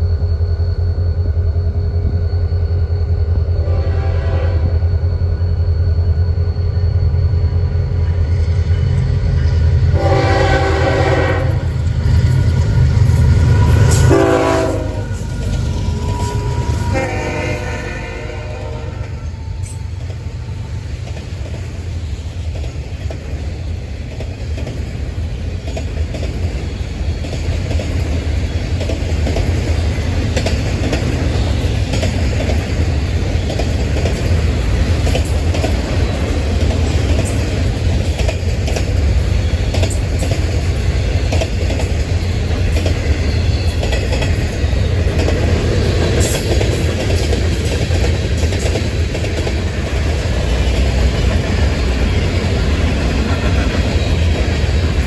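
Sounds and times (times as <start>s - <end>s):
freight train rumbling past: 0.0s - 55.0s
wheels clicking over rail joints: 19.0s - 55.0s.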